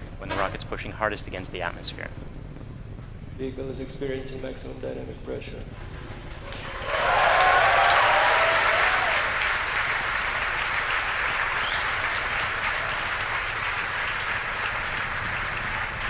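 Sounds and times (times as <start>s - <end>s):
crowd cheering and applauding: 6.3s - 16.0s
whoops: 6.5s - 9.5s.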